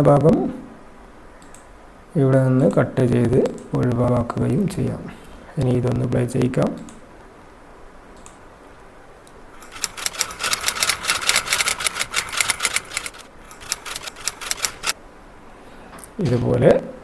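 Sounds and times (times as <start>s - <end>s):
typewriter keystrokes: 9.6s - 15.0s.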